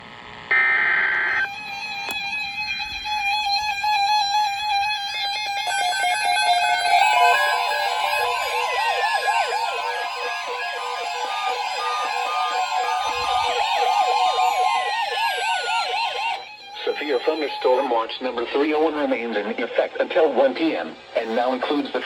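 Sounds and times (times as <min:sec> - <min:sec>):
screeching digital header tones: 0:00.5 - 0:03.7, 0:05.6 - 0:19.8
swooping siren-like chirps: 0:05.7 - 0:18.0
overlapping alarm beeps: 0:05.8 - 0:18.1.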